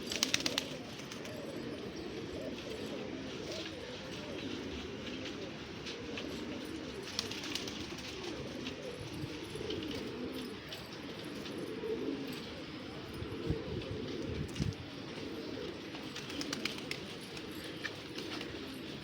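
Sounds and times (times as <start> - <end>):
pigeons cooing: 0.0 - 19.0.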